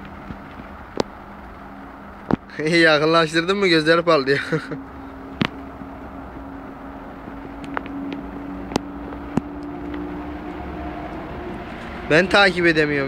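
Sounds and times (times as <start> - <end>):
low motor hum: 3.7 - 13.0.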